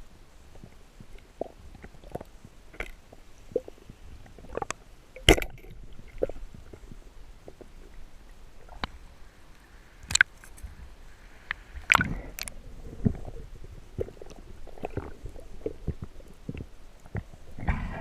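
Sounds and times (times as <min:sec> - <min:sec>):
low hiss: 0:00.0 - 0:18.0.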